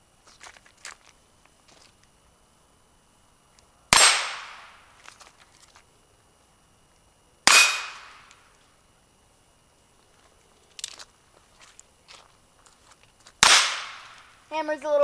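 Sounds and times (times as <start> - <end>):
revolver shots echoing: 3.9 - 4.7, 7.5 - 8.3, 13.4 - 14.2.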